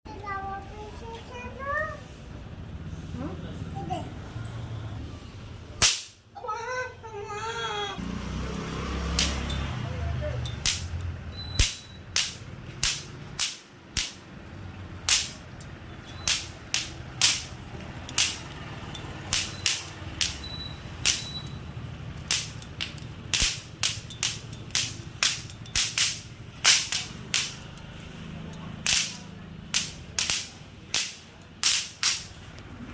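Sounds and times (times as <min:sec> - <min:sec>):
sharp small pops: 0:05.8 - 0:06.2, 0:09.1 - 0:09.5, 0:10.5 - 0:14.4, 0:15.0 - 0:18.6, 0:19.2 - 0:21.5, 0:22.1 - 0:27.9, 0:28.6 - 0:32.4.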